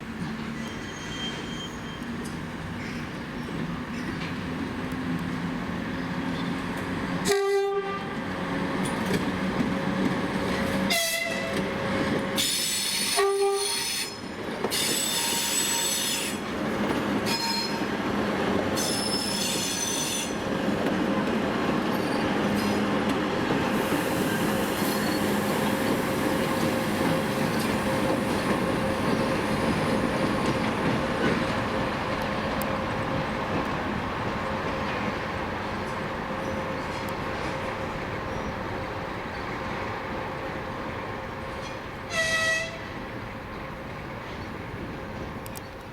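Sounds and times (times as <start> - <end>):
diesel locomotive engine rumble: 0.0 - 45.9
wheel squeal: 0.6 - 2.2, 18.8 - 20.4
locomotive horn blasts: 7.2 - 8.2, 10.9 - 11.6, 13.1 - 14.2, 42.1 - 43.0.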